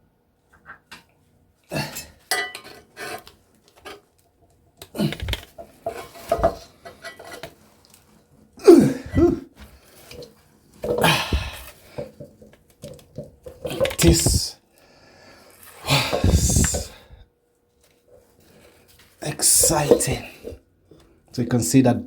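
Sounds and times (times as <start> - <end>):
steel shell clanking and scraping: 2.3 - 3.0.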